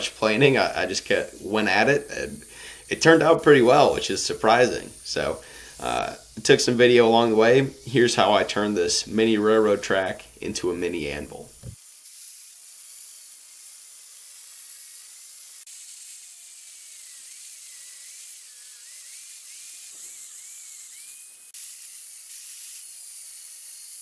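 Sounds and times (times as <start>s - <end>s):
high-pitched hiss: 0.0s - 11.8s.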